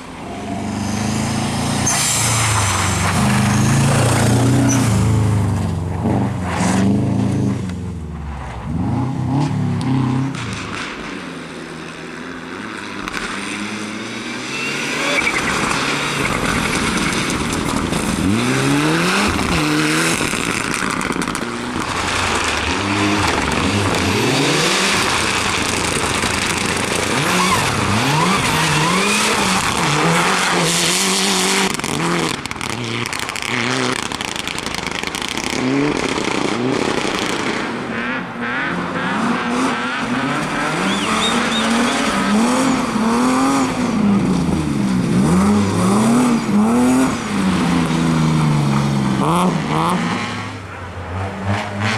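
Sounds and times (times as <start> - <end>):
car engine revving hard: 18.1 - 20.7, 22.4 - 34.2, 38.0 - 48.4.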